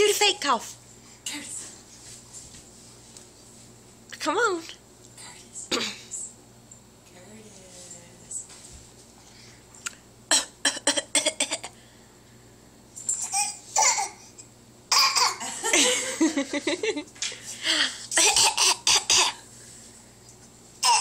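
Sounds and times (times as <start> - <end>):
baby coughing: 5.7 - 6.1, 10.3 - 11.8, 13.2 - 15.6, 18.2 - 19.4, 20.8 - 21.0.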